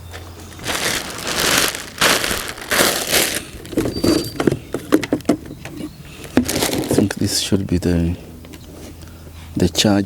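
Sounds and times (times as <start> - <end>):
packaging rustling: 0.6 - 4.4, 6.4 - 7.0.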